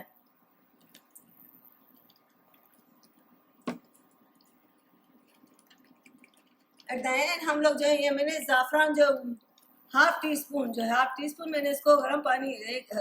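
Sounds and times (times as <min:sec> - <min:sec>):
sharp knock: 0:03.6 - 0:03.8.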